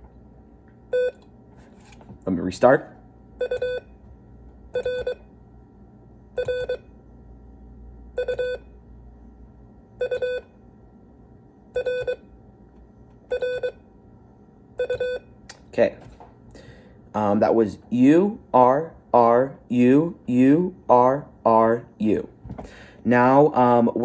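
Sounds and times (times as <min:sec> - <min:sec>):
morse code beeps: 0:00.9 - 0:01.2, 0:03.4 - 0:03.9, 0:04.8 - 0:05.2, 0:06.4 - 0:06.9, 0:08.2 - 0:08.7, 0:10.0 - 0:10.5, 0:11.8 - 0:12.3, 0:13.3 - 0:13.8, 0:14.8 - 0:15.3.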